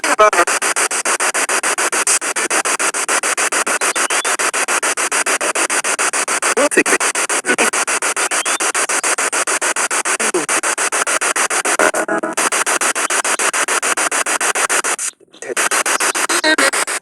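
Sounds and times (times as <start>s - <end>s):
pulsing radio static: 0.0s - 17.0s
radio station snippet: 3.6s - 4.5s, 6.4s - 9.3s, 10.0s - 17.0s.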